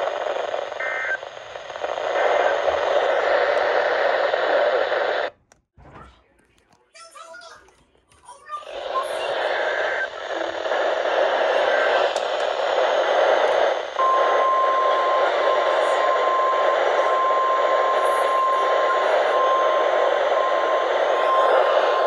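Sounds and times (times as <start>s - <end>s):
radio static hiss: 0.0s - 5.4s, 8.4s - 22.0s
steady high alarm tone: 13.0s - 22.0s.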